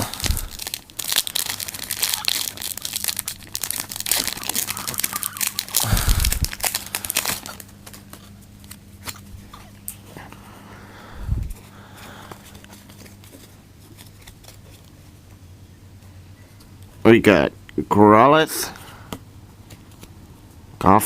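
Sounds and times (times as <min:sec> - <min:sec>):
wrapper tearing and crinkling: 0:00.0 - 0:09.2.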